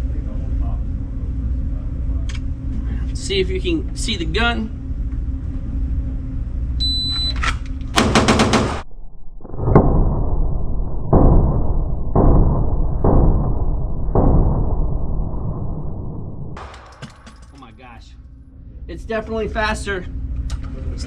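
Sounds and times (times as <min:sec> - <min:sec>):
pistol shots: 0:08.0 - 0:08.8, 0:16.6 - 0:17.3
heavy drawn-out booms: 0:08.0 - 0:17.2.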